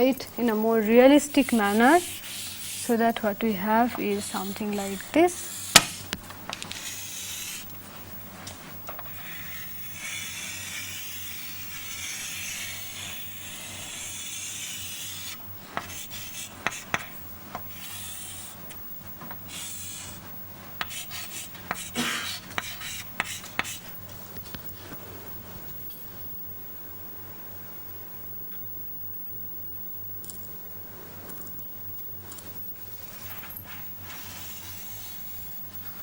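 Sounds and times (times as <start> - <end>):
low electrical hum: 0.0 - 36.0
pen scratching on paper: 0.4 - 7.8, 9.1 - 18.7, 19.5 - 23.9, 34.0 - 35.5
pen taps: 5.7 - 6.8.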